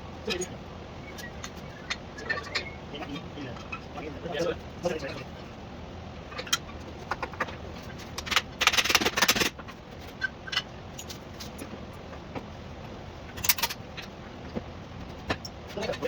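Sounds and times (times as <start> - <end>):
metal parts and tools rattling: 8.0 - 9.6, 13.4 - 14.1.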